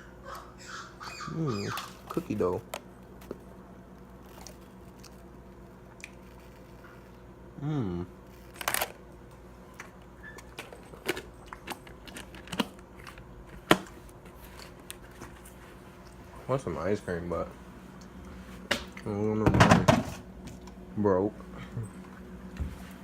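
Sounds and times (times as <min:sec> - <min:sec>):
steady low hum: 0:00.0 - 0:23.0
short pitched vocal sound: 0:07.6 - 0:08.2.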